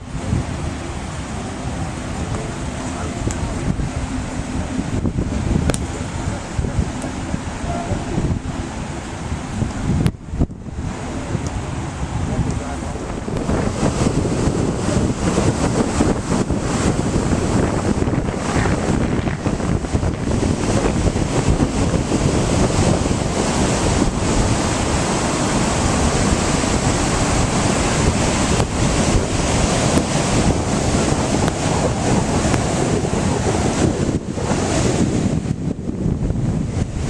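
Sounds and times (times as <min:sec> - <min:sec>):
ocean surf: 0:00.0 - 0:37.0
wind buffeting microphone: 0:00.0 - 0:37.0.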